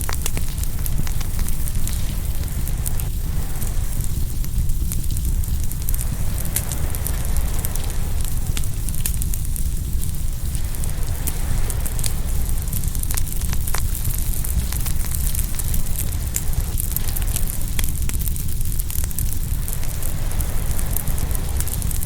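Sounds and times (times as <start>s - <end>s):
wood fire crackling and popping: 0.0s - 22.0s
waves breaking on shore: 6.0s - 8.9s, 19.5s - 22.0s.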